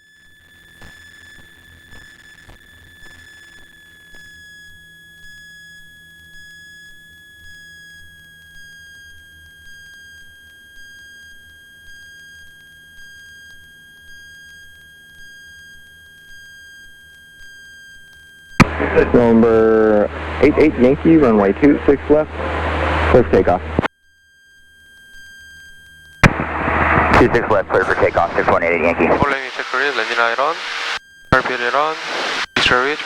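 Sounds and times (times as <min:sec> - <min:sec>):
faint low hum: 0:18.6 - 0:23.9, 0:26.2 - 0:33.0
high electronic whine: 0:18.6 - 0:23.9, 0:26.2 - 0:33.0.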